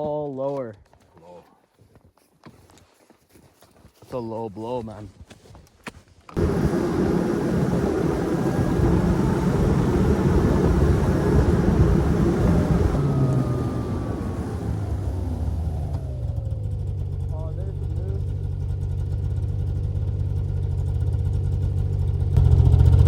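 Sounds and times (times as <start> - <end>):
rushing noise: 6.4 - 16.2
snowmobile engine drone: 6.4 - 23.0.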